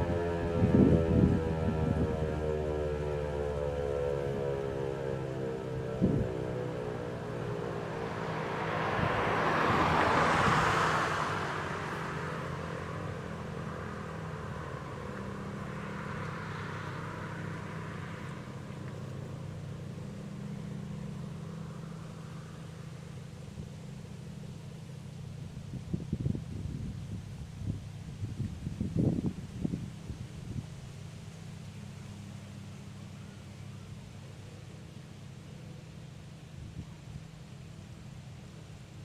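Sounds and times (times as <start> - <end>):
warning siren winding down: 0.0 - 25.4
road vehicle passing: 0.0 - 30.2
steady low hum: 11.1 - 39.0.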